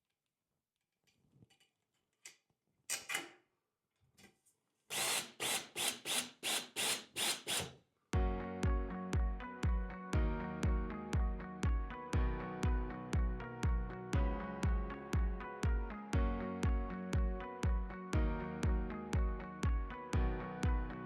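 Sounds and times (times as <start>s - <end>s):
cordless drill driving screws: 4.9s - 7.8s
background music with steady beat: 8.2s - 21.0s.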